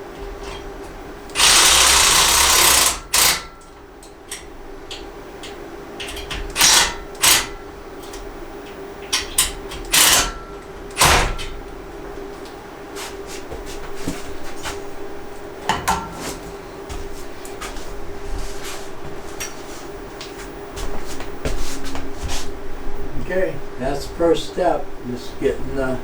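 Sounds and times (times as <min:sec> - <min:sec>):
power drill driving fasteners: 0:01.3 - 0:03.5, 0:06.5 - 0:07.5, 0:09.8 - 0:10.3.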